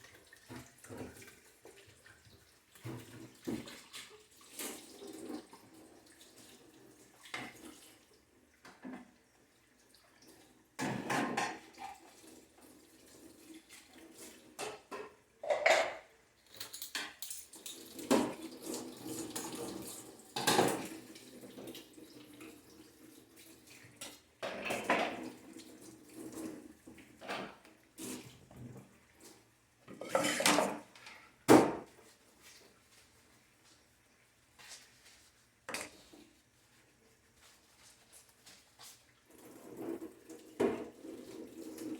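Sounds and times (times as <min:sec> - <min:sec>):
dishes and cutlery clattering: 0:10.8 - 0:12.0, 0:14.6 - 0:21.8, 0:24.0 - 0:25.3, 0:29.9 - 0:31.9.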